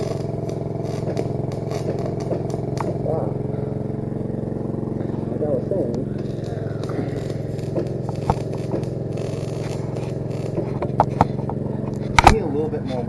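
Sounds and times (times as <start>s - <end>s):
welding arc snapping and crackling: 0.0s - 3.1s, 6.0s - 12.4s
engine running steadily: 0.0s - 13.0s.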